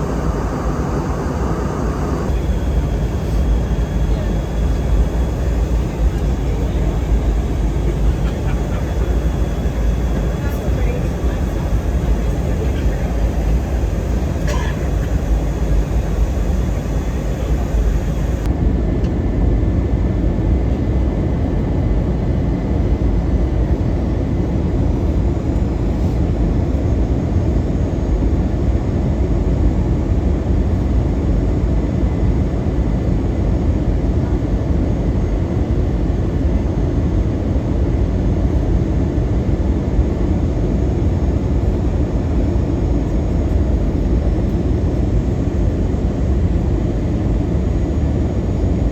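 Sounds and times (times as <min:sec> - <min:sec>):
airliner cabin rumble: 0:00.0 - 0:18.5.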